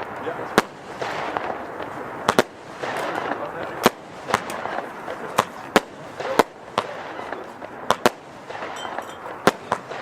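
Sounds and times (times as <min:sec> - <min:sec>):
continuous rushing noise: 0:00.0 - 0:10.0
firework bangs: 0:00.0 - 0:10.0.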